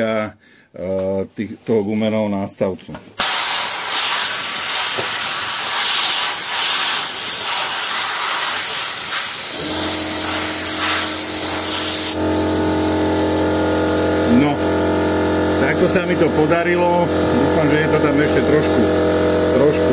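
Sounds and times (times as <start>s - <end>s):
sandblasting gun hissing: 3.2s - 12.2s
air compressor humming: 3.2s - 19.9s.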